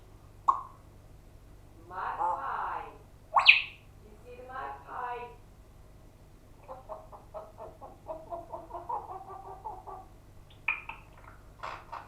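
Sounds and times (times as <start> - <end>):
bird clucking notes: 3.4 - 3.8, 6.6 - 11.1
bird sharp high calls: 3.4 - 3.9.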